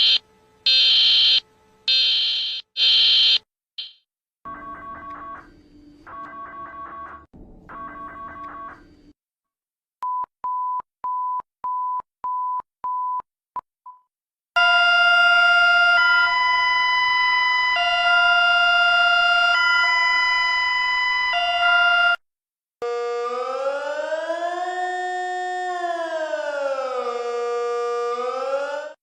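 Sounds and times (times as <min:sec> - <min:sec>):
loud multi-tone alarm: 0:00.0 - 0:09.2, 0:14.6 - 0:22.2, 0:22.8 - 0:29.0.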